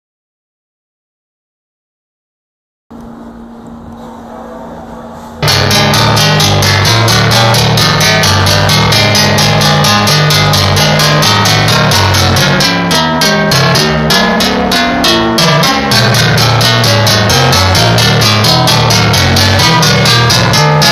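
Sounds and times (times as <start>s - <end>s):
music with fast beat and bass: 5.4s - 20.9s.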